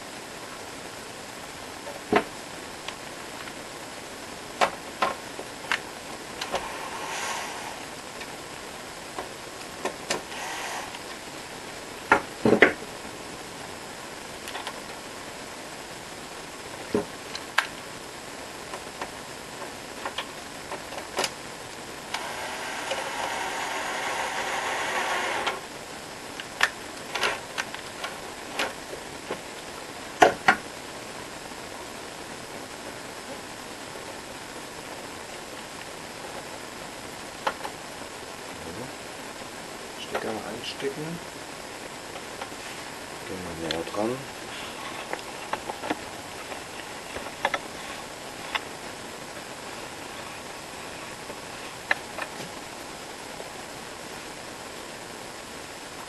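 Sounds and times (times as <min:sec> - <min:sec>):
steady hiss: 0:00.0 - 0:56.0
rasping whir: 0:10.3 - 0:11.1, 0:22.1 - 0:25.6.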